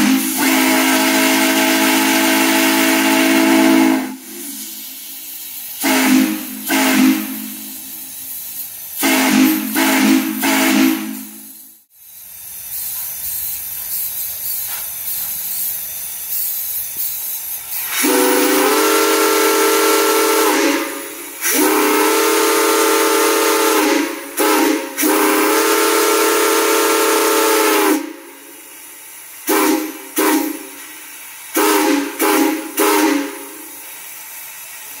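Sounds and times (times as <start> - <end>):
steam whistle blasts: 0.0 - 8.4, 9.0 - 11.8, 17.7 - 34.1
steam hissing: 0.0 - 35.0.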